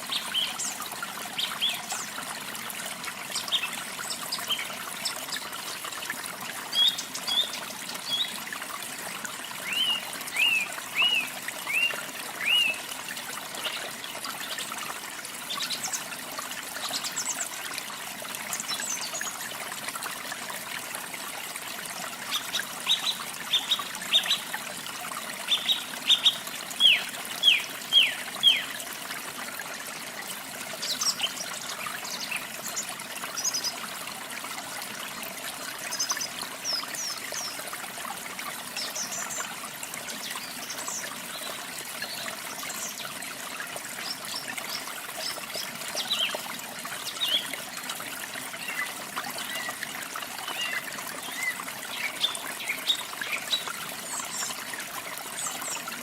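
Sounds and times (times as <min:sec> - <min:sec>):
small waterfall trickling: 0:00.0 - 0:56.0.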